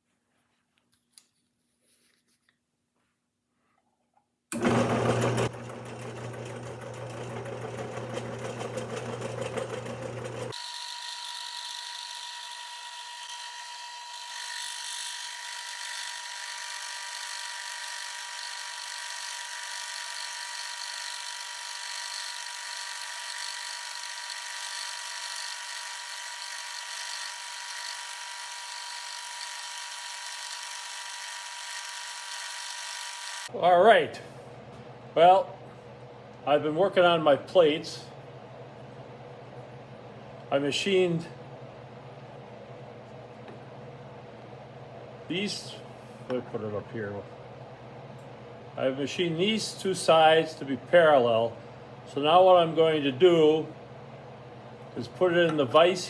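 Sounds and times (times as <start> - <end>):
milling machine motor whine: 4.6 - 33.5.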